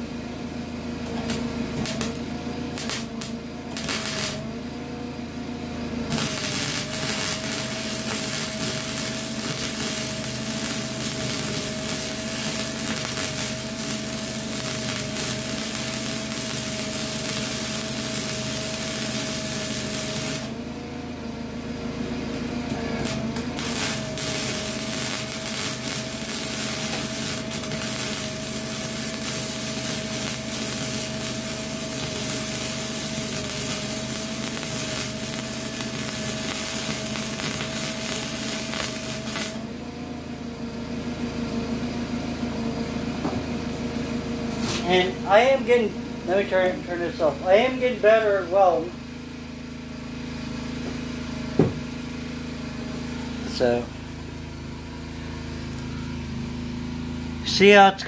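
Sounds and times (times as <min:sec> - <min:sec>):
welding arc crackling: 0:01.0 - 0:04.7, 0:06.0 - 0:20.7, 0:22.2 - 0:39.7, 0:44.5 - 0:48.9
steady hum: 0:01.2 - 0:04.8, 0:06.0 - 0:21.5, 0:22.4 - 0:41.7, 0:42.4 - 0:49.9.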